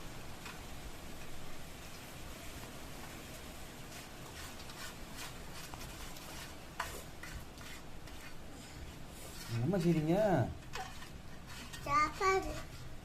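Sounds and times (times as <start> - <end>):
hand scraping food from plate: 3.9 - 13.0.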